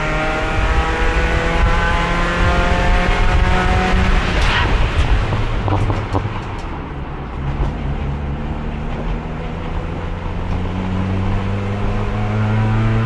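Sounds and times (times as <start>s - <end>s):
sharp clicks or knocks: 4.4s - 6.8s.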